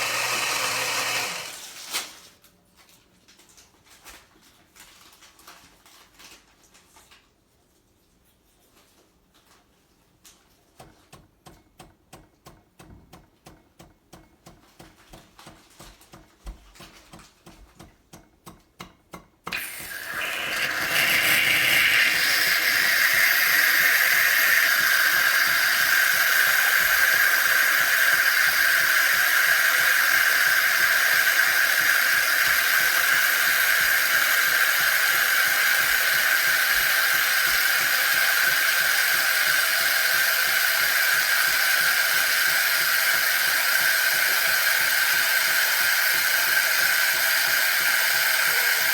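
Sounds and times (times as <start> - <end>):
espresso machine pump pulsing: 0.0 - 1.6, 19.5 - 48.9
steam hissing: 0.0 - 1.6, 19.5 - 48.9.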